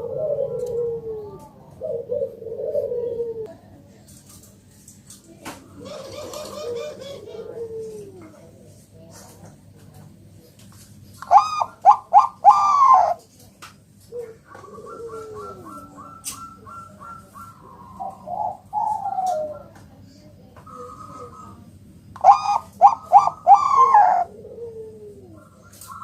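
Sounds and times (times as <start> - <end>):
doves calling: 0.0 - 3.5, 5.6 - 8.5, 10.9 - 26.0
low falling coo: 0.0 - 3.8, 5.6 - 8.6, 14.1 - 20.0, 20.7 - 26.0.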